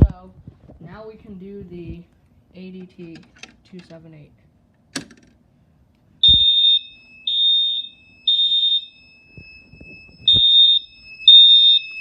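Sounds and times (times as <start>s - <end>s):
fire alarm horn blasts: 6.2s - 12.0s.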